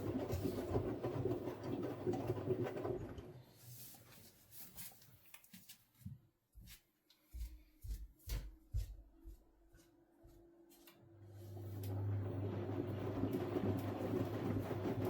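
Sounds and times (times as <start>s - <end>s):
washing machine motor: 0.0s - 3.5s, 11.2s - 15.0s.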